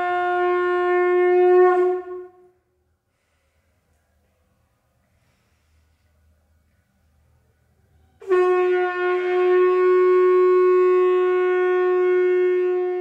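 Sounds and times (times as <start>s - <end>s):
long steady horn blast: 0.0s - 2.8s, 7.9s - 13.0s.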